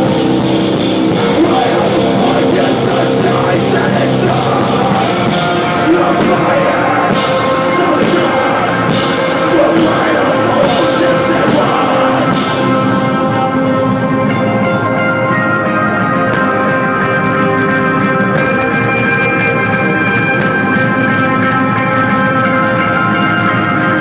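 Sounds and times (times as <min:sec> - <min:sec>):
drums with crashing cymbals: 0:00.0 - 0:14.5
band playing live: 0:00.0 - 0:24.0
loud distorted guitars: 0:00.0 - 0:24.0.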